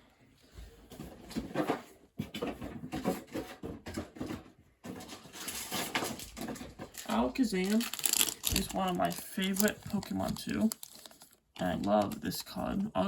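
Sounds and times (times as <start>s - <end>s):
trading cards rustling and clicking: 4.9s - 13.0s.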